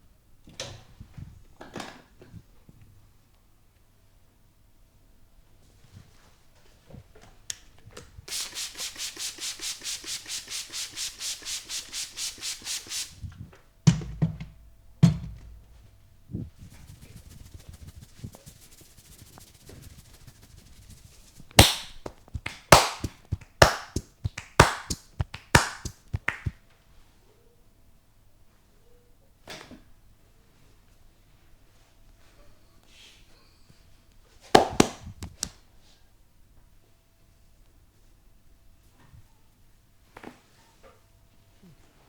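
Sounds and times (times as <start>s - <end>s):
hands rubbing head: 8.3s - 13.2s, 16.5s - 26.6s
heavy hand slaps: 21.6s - 26.6s
sharp loud hand snaps: 21.6s - 26.6s.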